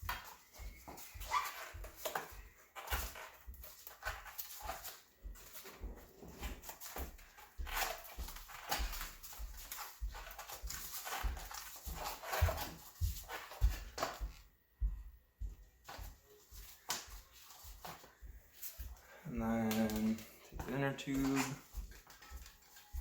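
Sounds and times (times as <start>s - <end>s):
rubber tire squeaking on rim: 1.2s - 2.2s.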